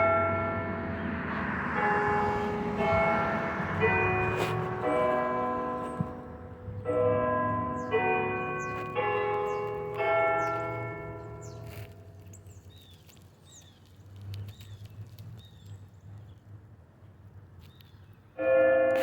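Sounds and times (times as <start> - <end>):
church bell ringing: 0.0 - 12.2, 18.4 - 19.0
small birds chirping: 7.8 - 18.3.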